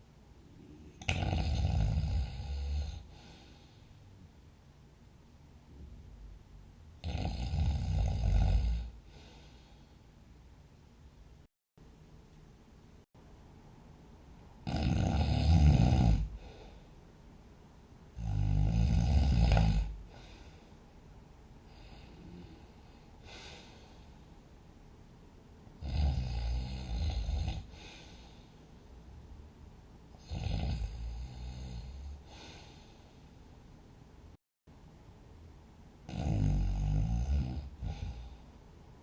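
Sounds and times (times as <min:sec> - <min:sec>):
sleep breathing: 0:00.6 - 0:04.1, 0:07.0 - 0:10.0, 0:14.7 - 0:16.9, 0:18.2 - 0:20.8, 0:21.7 - 0:24.3, 0:25.8 - 0:28.7, 0:30.2 - 0:33.4, 0:36.1 - 0:38.5
loud snoring: 0:00.9 - 0:03.4, 0:07.0 - 0:09.0, 0:14.6 - 0:16.5, 0:18.2 - 0:20.2, 0:25.8 - 0:27.8, 0:30.2 - 0:32.4, 0:36.1 - 0:38.3.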